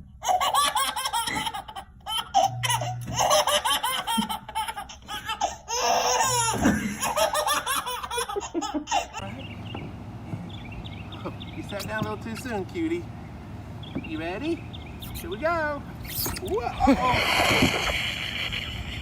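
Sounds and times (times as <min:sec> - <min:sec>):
baby laughing: 0:00.2 - 0:09.3, 0:16.2 - 0:19.0.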